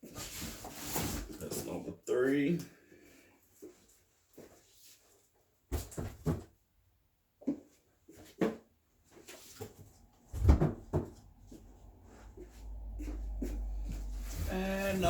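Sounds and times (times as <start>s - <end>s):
cardboard boxes knocking and thumping: 5.7s - 6.6s, 7.4s - 15.0s
low rumble: 11.2s - 15.0s.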